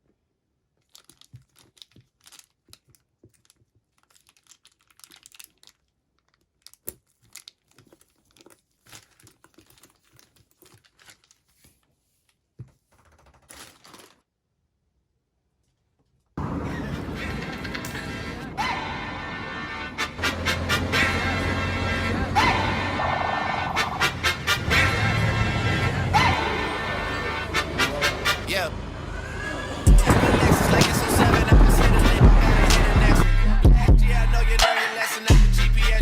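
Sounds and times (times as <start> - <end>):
packaging being torn and crinkled: 0.8 - 11.6, 13.3 - 14.2.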